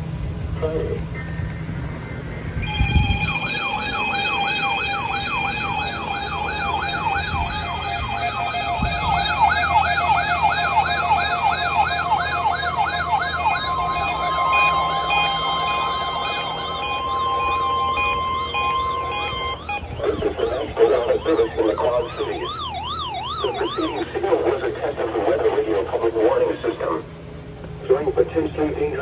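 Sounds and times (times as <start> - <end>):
steady high tones: 2.6 - 24.2
warbling alarm tone: 2.6 - 24.2.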